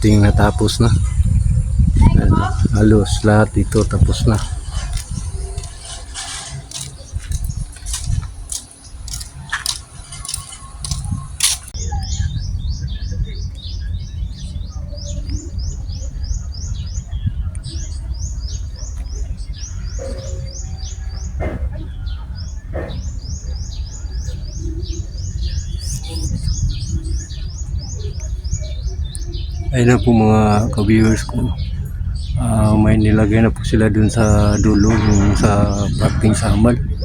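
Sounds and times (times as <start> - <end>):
bird chirping: 0.0 - 37.0
low rumble: 0.0 - 37.0
sharp clicks: 4.7 - 11.8.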